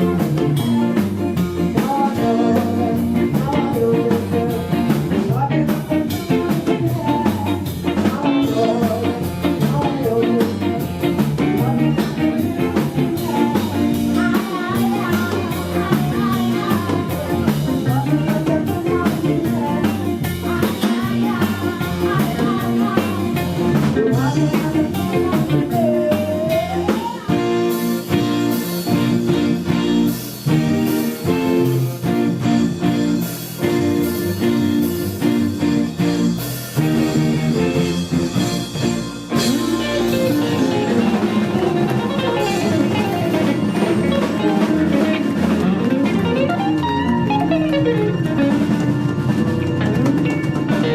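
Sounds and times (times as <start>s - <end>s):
person singing: 0.0s - 30.0s, 36.8s - 49.2s, 49.8s - 50.9s
rock band playing: 0.0s - 50.9s.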